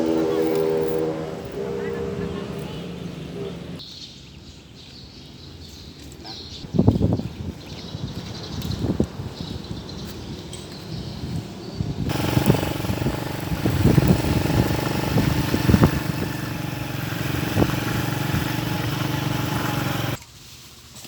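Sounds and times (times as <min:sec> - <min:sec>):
small engine running: 0:00.0 - 0:03.8, 0:12.1 - 0:20.2.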